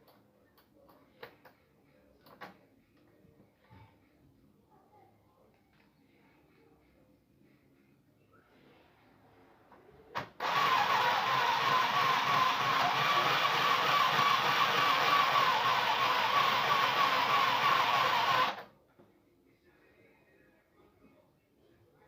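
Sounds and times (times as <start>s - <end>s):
sewing machine stitching: 10.2s - 18.6s.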